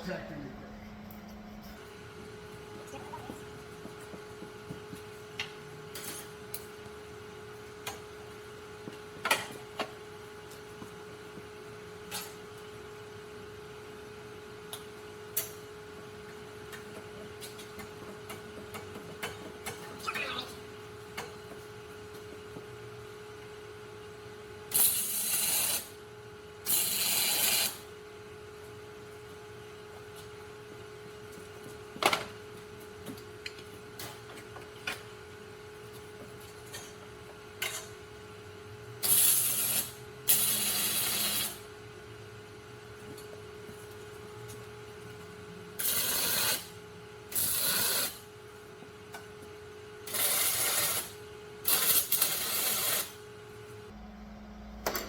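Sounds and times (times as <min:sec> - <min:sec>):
steady hum: 0:00.0 - 0:13.3, 0:53.1 - 0:55.0
arc welder crackling: 0:24.6 - 0:28.0, 0:39.0 - 0:41.7, 0:45.8 - 0:48.4, 0:50.0 - 0:53.8.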